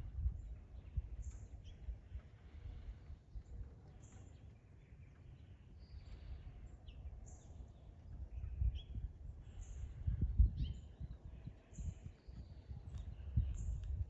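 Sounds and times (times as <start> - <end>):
wind noise on microphone: 0.0 - 3.6, 8.0 - 14.0
songbirds chirping: 0.0 - 14.0.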